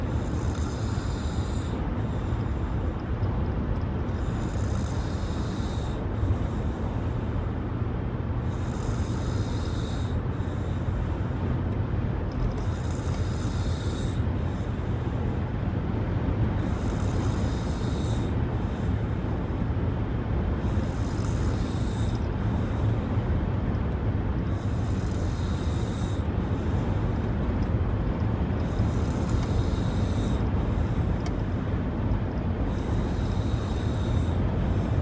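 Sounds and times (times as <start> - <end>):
woman snoring: 0.0 - 2.8, 4.1 - 7.2, 8.5 - 11.1, 12.5 - 14.9, 16.6 - 19.1, 20.6 - 23.0, 24.4 - 27.1, 28.6 - 31.3, 32.6 - 35.0
car rumbling on road: 0.0 - 35.0.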